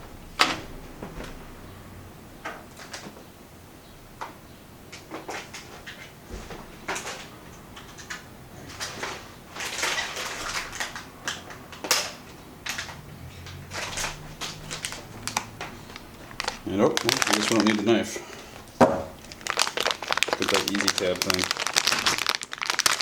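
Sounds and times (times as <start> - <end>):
packaging handling clicks and knocks: 6.9 - 23.0
packaging crinkling: 8.7 - 23.0.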